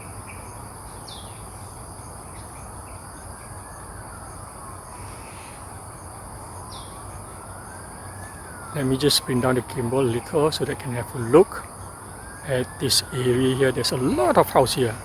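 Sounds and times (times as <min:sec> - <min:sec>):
low background hum: 0:12.5 - 0:15.0.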